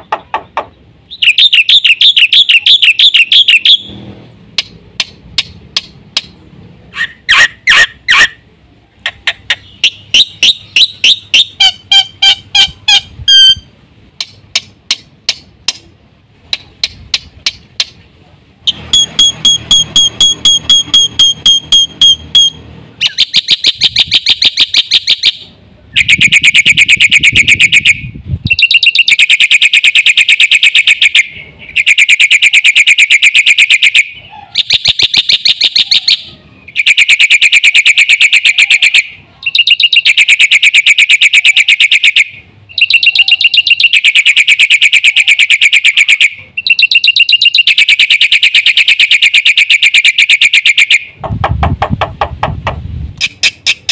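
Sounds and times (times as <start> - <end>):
starling calling harshly: 28.5 - 51.1.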